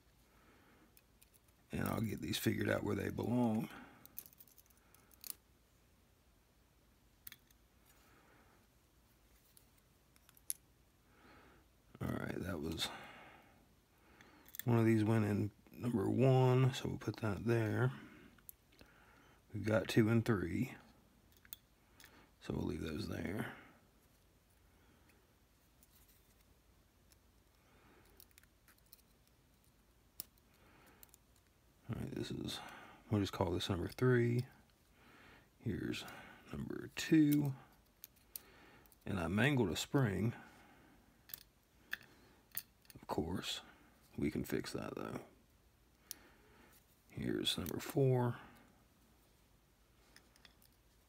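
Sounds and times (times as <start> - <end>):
small metal pins clicking: 41.2 - 43.0.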